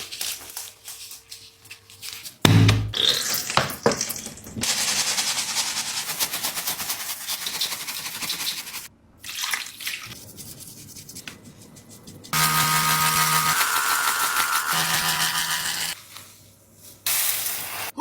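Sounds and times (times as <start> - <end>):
brush scrubbing wet toy: 0.0 - 2.4, 4.6 - 12.4.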